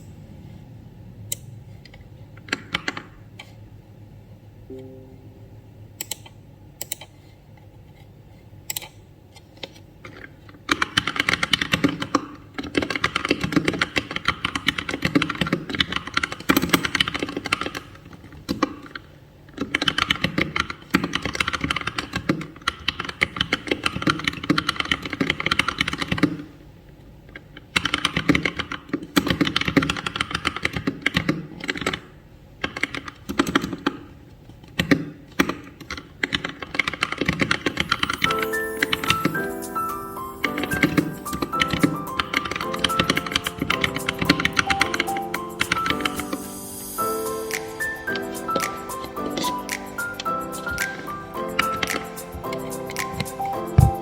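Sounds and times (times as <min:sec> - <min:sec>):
mechanical keyboard typing: 0:09.6 - 0:26.4, 0:27.7 - 0:32.0, 0:34.8 - 0:54.0.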